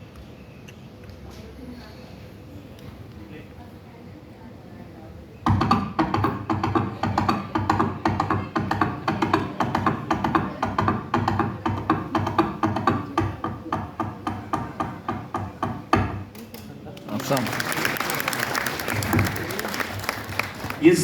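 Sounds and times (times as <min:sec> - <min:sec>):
foley hoofbeats galloping: 0:05.5 - 0:16.2.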